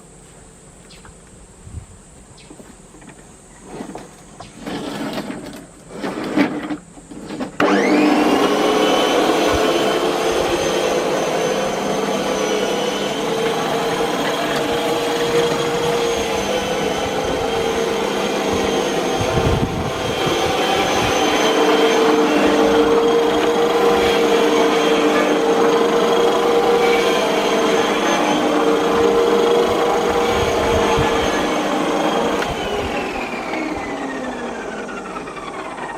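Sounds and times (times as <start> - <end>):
electric lawn mower running: 2.9 - 35.9.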